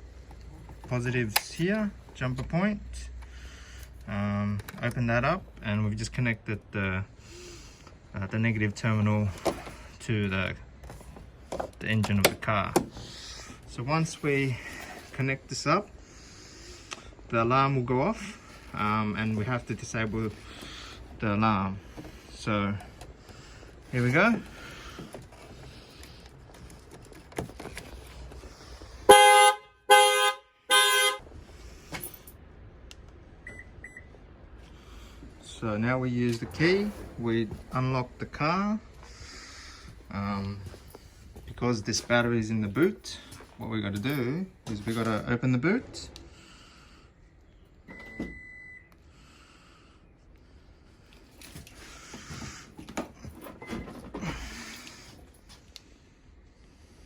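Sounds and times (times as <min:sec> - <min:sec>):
breathy rustling noise: 0:18.1 - 0:29.1, 0:38.8 - 0:42.2, 0:49.0 - 0:57.0
car alarm horn honks: 0:29.1 - 0:31.2.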